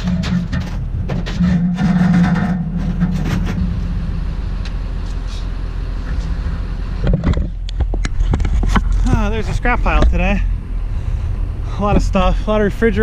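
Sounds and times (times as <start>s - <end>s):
knocks and rattles: 0.0s - 5.3s, 6.0s - 10.5s
truck engine humming: 0.0s - 13.0s.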